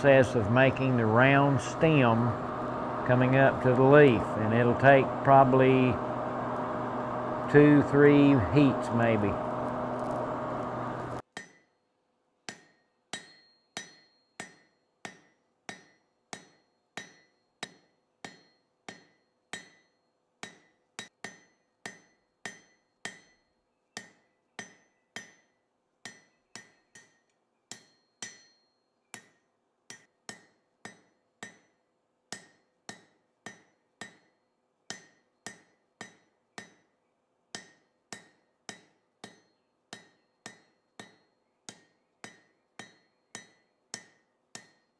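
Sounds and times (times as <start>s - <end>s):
hammer striking iron on anvil: 11.4s - 11.7s, 12.5s - 36.9s, 37.5s - 44.9s.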